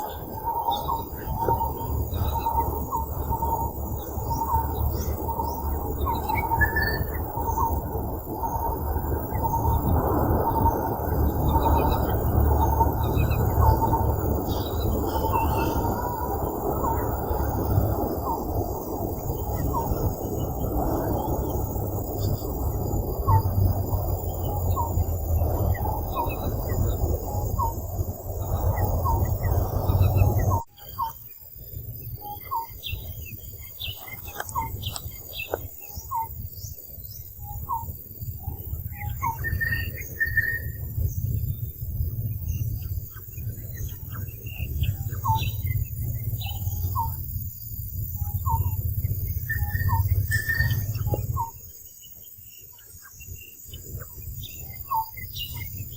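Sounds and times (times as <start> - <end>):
low rushing noise: 0.0 - 30.7
high chirping calls: 0.0 - 31.3, 32.1 - 47.4, 48.2 - 55.9.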